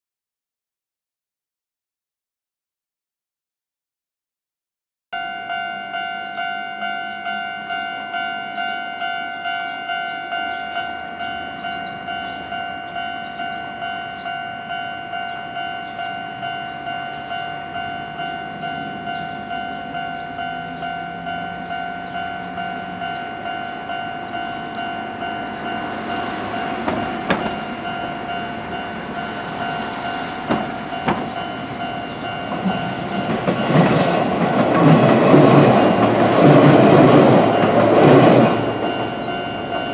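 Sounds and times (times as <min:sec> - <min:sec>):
level-crossing warning bell: 0:05.2 - 0:39.9
train wheels clicking over rail joints: 0:25.6 - 0:39.9.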